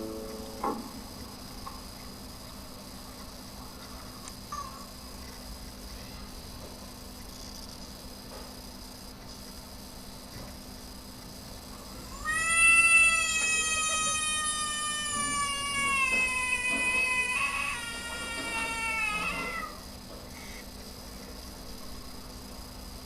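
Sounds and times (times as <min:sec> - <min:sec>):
cat meowing: 0:12.1 - 0:19.8.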